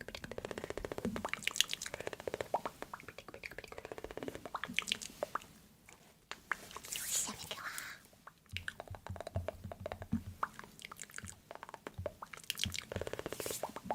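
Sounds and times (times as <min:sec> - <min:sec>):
wet mouth clicking: 0:00.0 - 0:05.5, 0:06.3 - 0:13.9.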